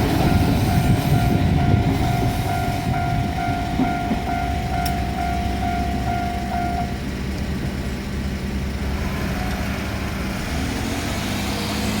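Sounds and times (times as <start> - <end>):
level crossing alarm pulsing tone: 0.0 - 7.1
low engine rumble: 0.0 - 12.0.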